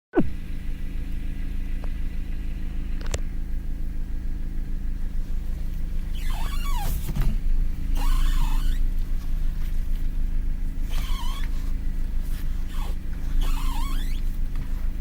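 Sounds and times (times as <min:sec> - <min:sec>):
car low rumble: 0:00.1 - 0:15.0
car squealing: 0:05.4 - 0:09.7, 0:10.7 - 0:15.0.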